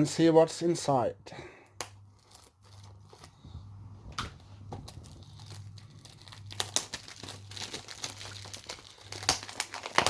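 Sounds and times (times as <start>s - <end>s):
plastic shrink-wrap tearing: 1.8s - 3.4s, 4.2s - 10.0s.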